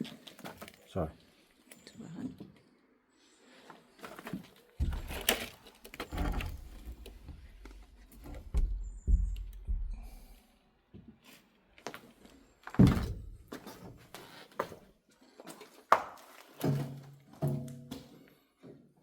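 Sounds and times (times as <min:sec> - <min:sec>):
knocks scrapes and creaks: 0:03.7 - 0:10.4.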